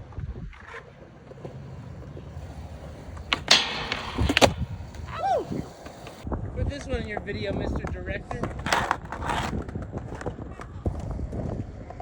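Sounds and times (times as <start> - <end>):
skateboard scraping: 0.0 - 6.3, 7.1 - 12.0
skateboard wheels rolling on concrete: 0.0 - 12.0
skateboard clacking: 0.5 - 12.0
person exclaiming: 5.1 - 5.7.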